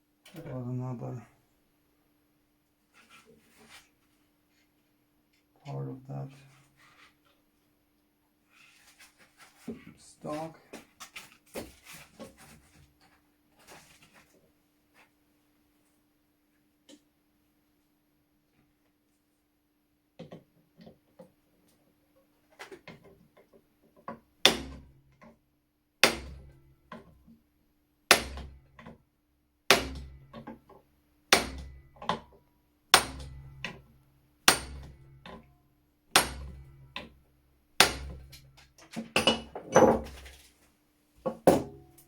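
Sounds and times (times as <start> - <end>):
hammer striking metal punch: 24.5 - 24.8, 26.0 - 26.6, 28.1 - 28.6, 29.7 - 30.4, 31.3 - 32.2, 33.0 - 33.8, 34.5 - 35.1, 36.2 - 36.9, 37.8 - 38.4.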